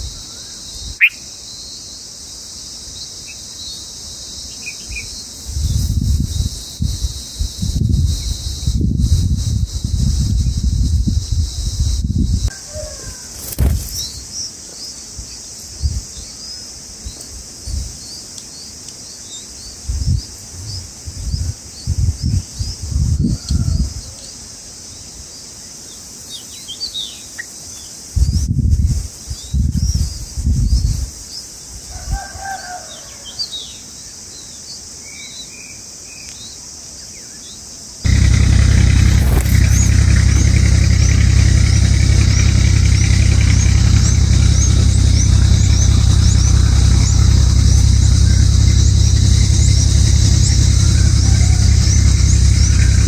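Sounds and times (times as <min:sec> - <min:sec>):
small birds chirping: 0:00.0 - 0:01.3, 0:36.2 - 0:53.0
sharp click: 0:13.4 - 0:14.1
high-pitched insect drone: 0:38.1 - 0:53.0
low rumbles: 0:38.1 - 0:53.0
low thumps: 0:38.1 - 0:53.0
steady high buzz: 0:38.1 - 0:53.0.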